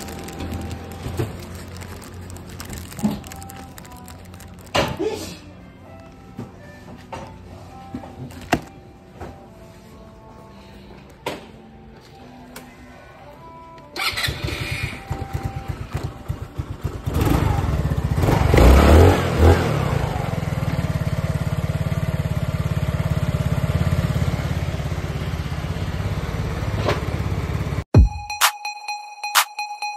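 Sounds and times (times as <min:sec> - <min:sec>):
motorcycle engine starting and idling: 0:00.0 - 0:05.0, 0:14.0 - 0:27.8.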